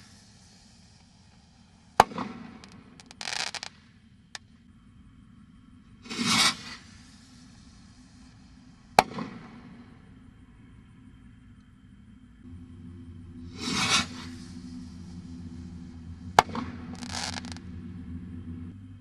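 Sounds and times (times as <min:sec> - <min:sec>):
firework rocket launch hiss: 0:00.0 - 0:04.0, 0:06.0 - 0:09.9, 0:13.4 - 0:17.7.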